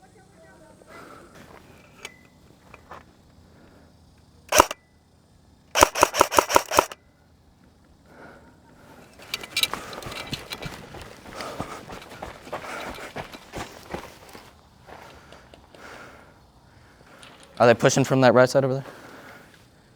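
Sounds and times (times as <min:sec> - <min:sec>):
airsoft gun firing: 0:04.5 - 0:04.8, 0:05.7 - 0:07.0
footsteps: 0:09.5 - 0:15.1.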